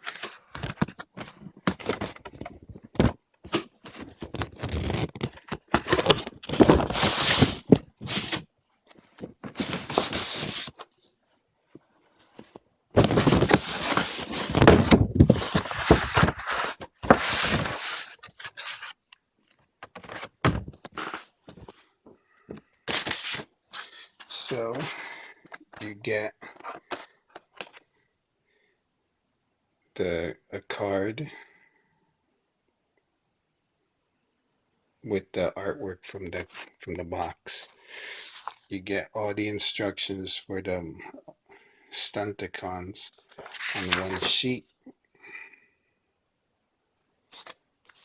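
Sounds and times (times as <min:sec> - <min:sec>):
paper rustling and scraping: 0:03.5 - 0:08.5, 0:09.2 - 0:10.9, 0:12.4 - 0:19.0, 0:19.8 - 0:21.8, 0:22.9 - 0:25.7, 0:37.8 - 0:38.7, 0:43.1 - 0:44.5, 0:47.3 - 0:48.0.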